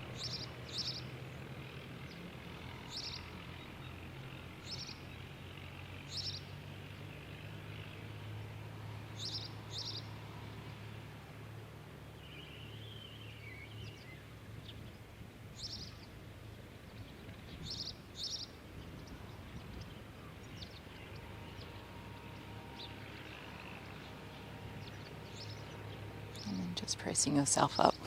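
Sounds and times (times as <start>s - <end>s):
birds chirping faintly: 0.0s - 28.0s
steady low hum: 0.0s - 28.0s.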